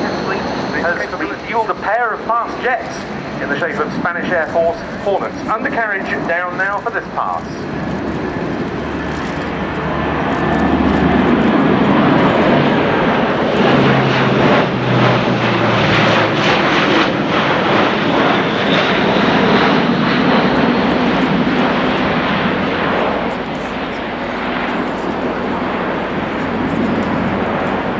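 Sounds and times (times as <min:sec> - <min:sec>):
propeller aircraft engine drone: 0:00.0 - 0:27.9.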